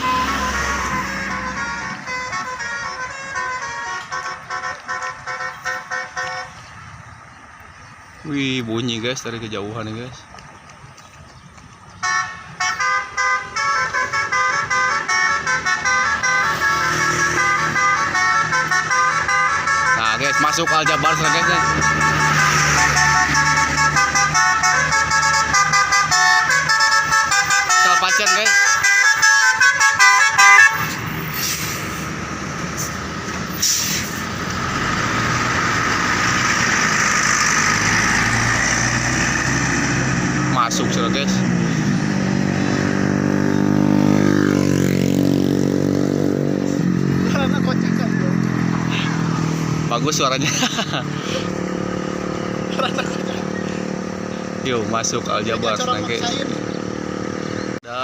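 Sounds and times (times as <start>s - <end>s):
bus horn playing a melody: 0.0s - 6.6s, 12.0s - 32.0s
bus engine running: 0.0s - 57.8s
road noise: 0.0s - 58.0s.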